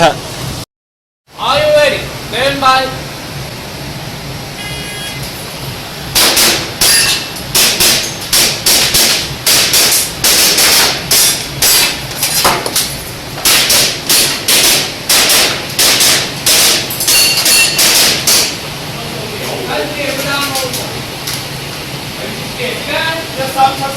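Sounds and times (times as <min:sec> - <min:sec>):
airsoft pistol shots: 0:06.2 - 0:12.0, 0:13.4 - 0:18.6.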